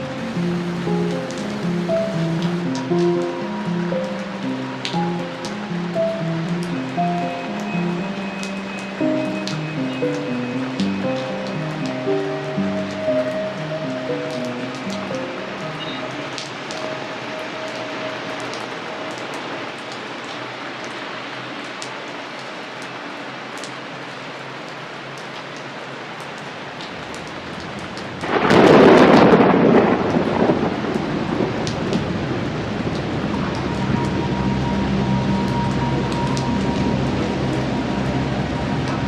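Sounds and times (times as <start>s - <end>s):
raindrops ticking: 0.0s - 17.8s, 32.8s - 39.0s
steady rain: 0.0s - 39.0s
thunder clap and rumble: 0.2s - 2.7s, 28.2s - 39.0s.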